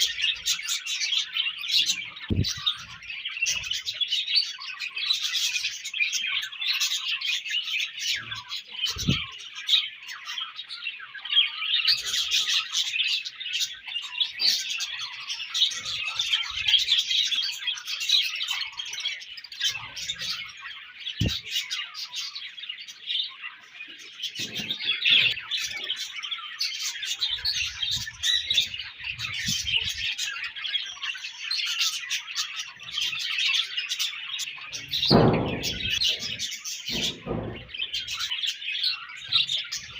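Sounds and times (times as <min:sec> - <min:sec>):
budgerigars chirping and chattering: 0:00.0 - 0:39.9
low thumps: 0:02.3 - 0:02.6, 0:35.0 - 0:38.0.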